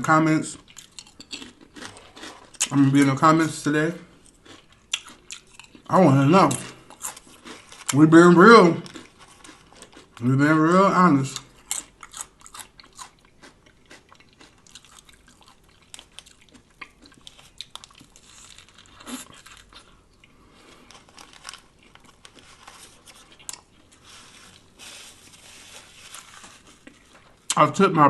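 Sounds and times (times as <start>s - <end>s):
chewing crunchy sandwich: 0.5s - 2.8s, 4.1s - 10.3s, 11.2s - 27.6s.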